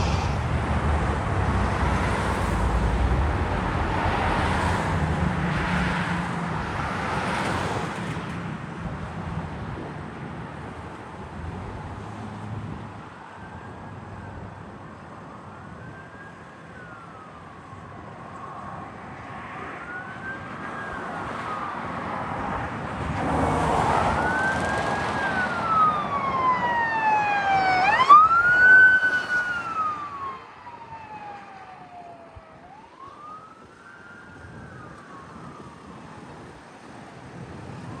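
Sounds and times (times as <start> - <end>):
emergency siren wailing: 0.0 - 6.1, 15.2 - 22.6, 23.2 - 38.0
vehicle engine and tyre noise: 0.0 - 38.0.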